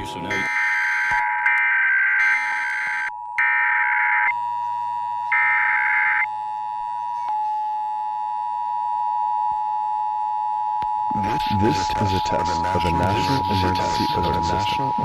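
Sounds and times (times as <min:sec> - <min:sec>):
harsh digital data bursts: 0:11.1 - 0:15.0.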